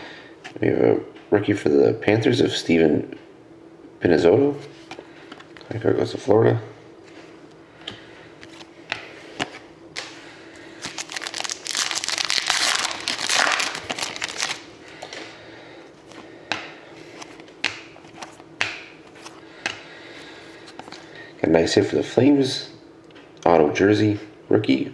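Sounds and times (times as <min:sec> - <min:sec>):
wrapper crinkling: 0:10.8 - 0:15.1.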